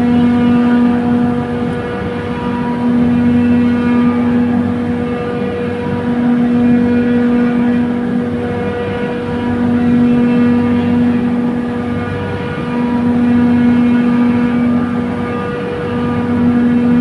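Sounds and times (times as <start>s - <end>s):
chiller compressor humming: 0.0s - 17.0s
machine whine: 0.0s - 17.0s.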